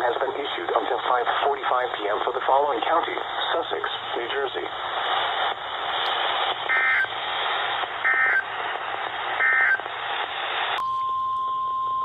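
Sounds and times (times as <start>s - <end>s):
radio static hiss: 0.0s - 10.8s
short data bursts: 6.0s - 7.2s, 7.9s - 8.6s, 9.3s - 9.9s.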